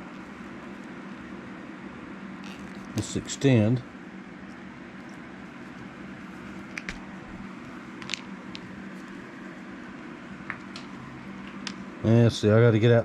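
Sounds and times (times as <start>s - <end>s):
low background hum: 0.0s - 13.0s
clicks of small parts handled: 6.7s - 7.0s, 8.0s - 8.7s.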